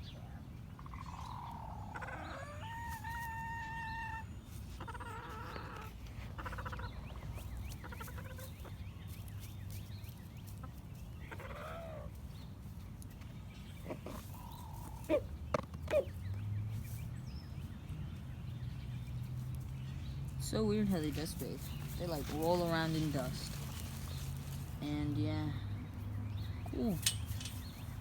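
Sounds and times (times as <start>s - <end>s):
chickens clucking and calling: 0.0s - 17.6s.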